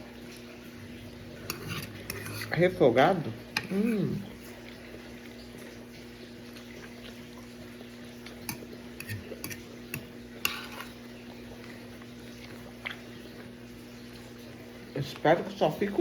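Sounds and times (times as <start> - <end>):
cutlery clinking against pot: 1.4 - 2.6, 8.4 - 11.0.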